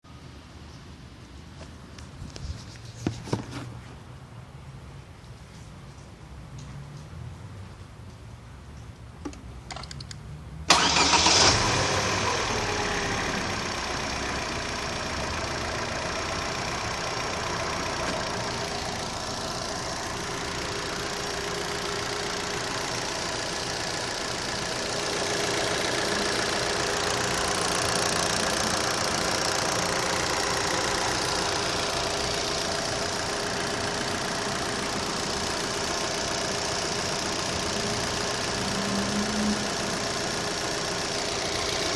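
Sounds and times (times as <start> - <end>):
car engine starting and idling: 9.3 - 41.9.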